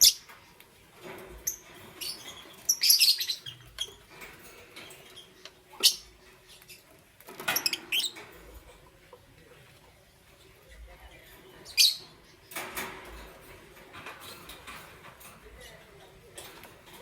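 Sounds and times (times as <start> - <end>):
lovebirds chirping: 0.0 - 14.8.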